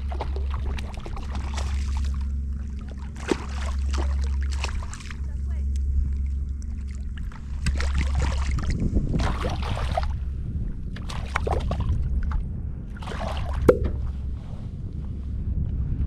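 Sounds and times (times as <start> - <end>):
sharp click: 13.7 - 14.0.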